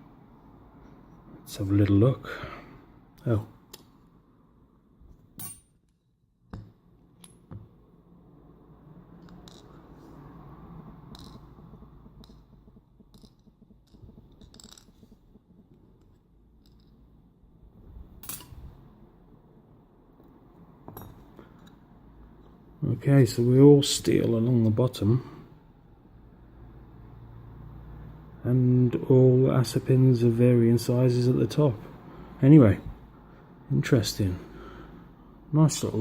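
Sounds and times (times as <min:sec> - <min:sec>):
small metal pins clinking: 0:05.4 - 0:06.0, 0:12.2 - 0:15.2, 0:16.0 - 0:17.1, 0:18.2 - 0:18.8.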